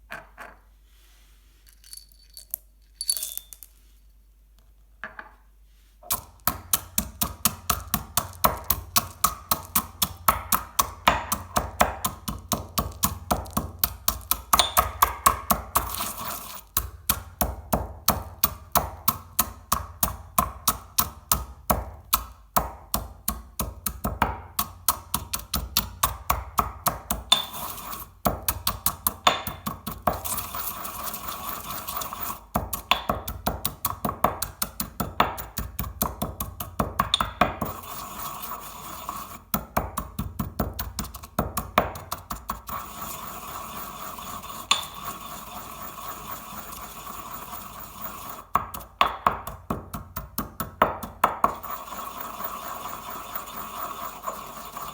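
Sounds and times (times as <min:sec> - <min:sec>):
chocolate balls crunching: 0:06.7 - 0:10.9.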